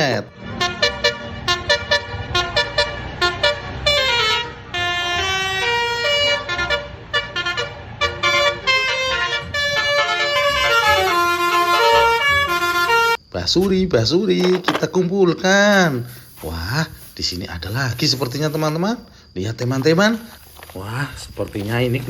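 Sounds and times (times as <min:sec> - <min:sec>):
bus horn playing a tune: 0:00.6 - 0:13.2.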